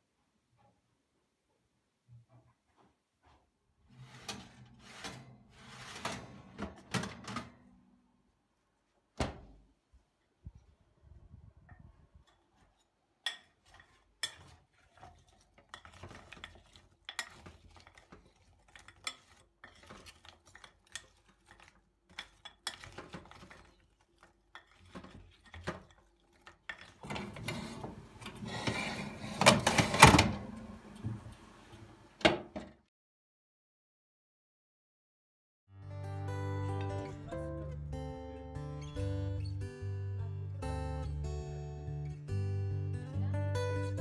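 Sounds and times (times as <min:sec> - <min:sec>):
scraping and rustling: 0:03.3 - 0:07.4, 0:13.5 - 0:31.3
dishes and utensils clinking: 0:12.2 - 0:31.3.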